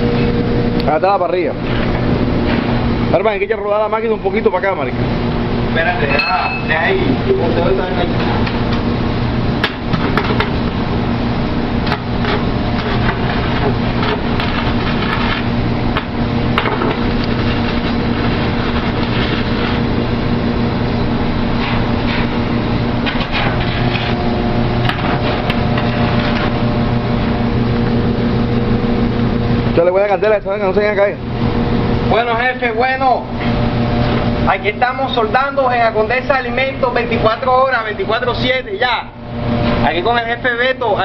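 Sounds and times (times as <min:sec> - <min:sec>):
welding machine hum: 0:00.0 - 0:41.0
welding arc crackling and popping: 0:08.2 - 0:28.9.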